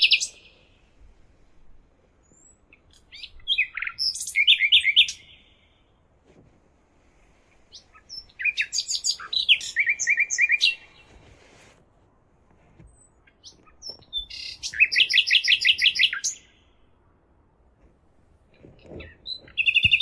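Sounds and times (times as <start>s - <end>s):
songbird chirping and trilling: 0.0s - 0.9s, 2.2s - 5.9s, 7.7s - 11.2s, 12.9s - 16.9s, 18.8s - 20.0s.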